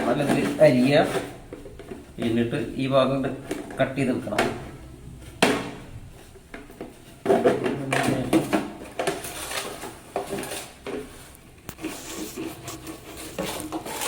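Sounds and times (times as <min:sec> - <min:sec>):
knife cutting plastic bottle: 0:11.7 - 0:14.0.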